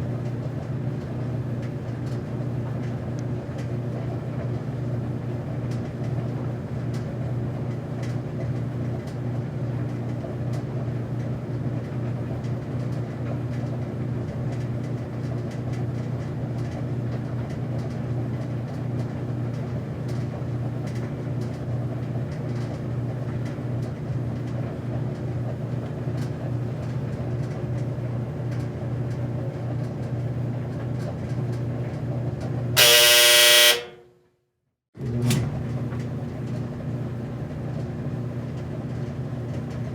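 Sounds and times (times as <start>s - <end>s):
loud buzzer tone: 32.8s - 34.1s.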